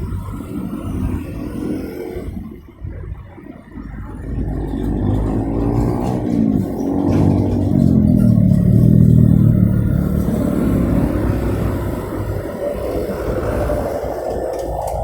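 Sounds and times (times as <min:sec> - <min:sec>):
traffic hum: 0:00.0 - 0:15.0
vehicle engine passing: 0:03.8 - 0:15.0.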